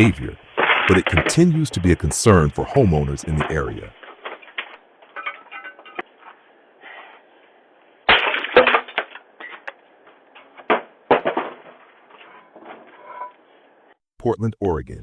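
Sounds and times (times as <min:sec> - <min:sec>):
faint scraping and rustling: 0:02.8 - 0:08.0, 0:09.3 - 0:14.0.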